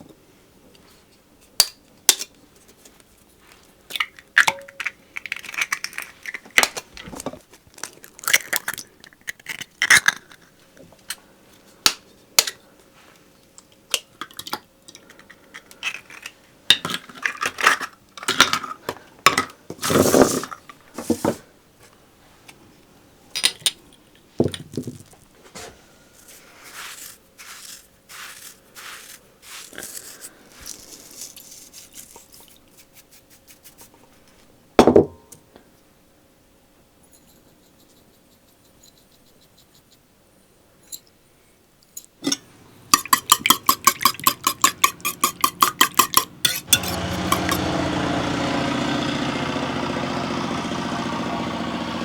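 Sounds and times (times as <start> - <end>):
rustling and tearing: 26.2 - 34.3
dishes and utensils clinking: 42.2 - 47.7.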